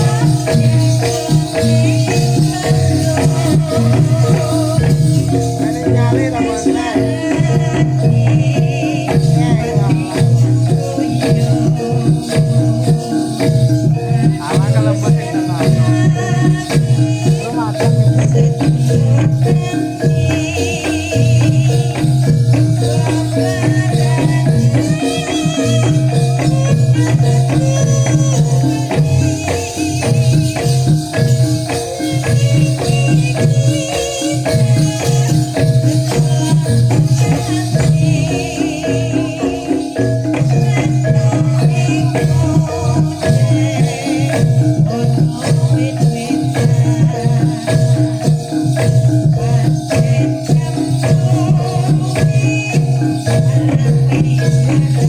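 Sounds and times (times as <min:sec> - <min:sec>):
gamelan music: 0:00.0 - 0:55.0.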